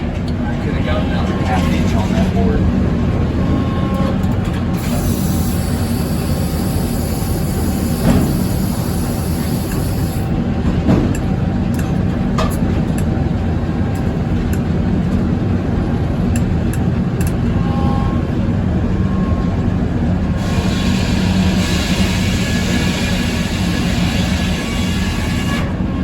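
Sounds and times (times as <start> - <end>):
circular saw droning: 0.0 - 10.4, 17.0 - 26.0.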